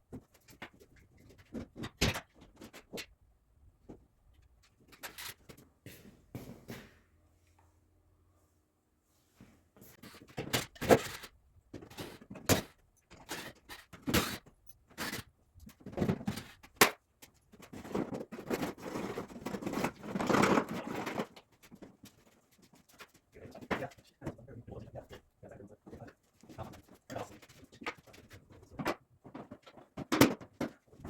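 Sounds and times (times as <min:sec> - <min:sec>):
rustling and scraping: 0:09.0 - 0:31.0.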